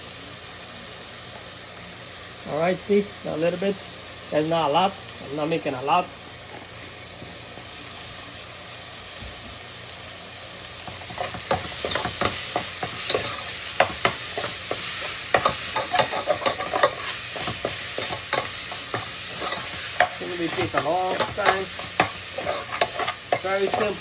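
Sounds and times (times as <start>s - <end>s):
meat sizzling in oil: 0.0s - 24.0s
utensil scraping and knocking pot: 10.9s - 24.0s.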